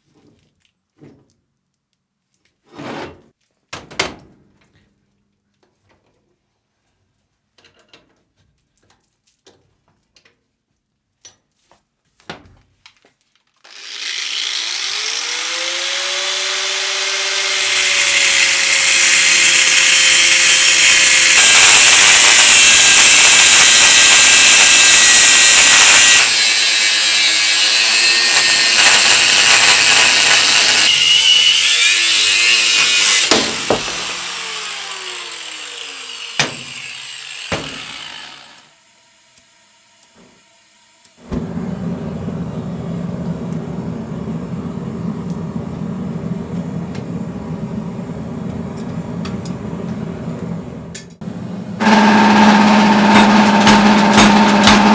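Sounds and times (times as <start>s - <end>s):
power tool cutting or grinding: 13.6s - 54.9s
electric power tool whining: 13.7s - 54.9s.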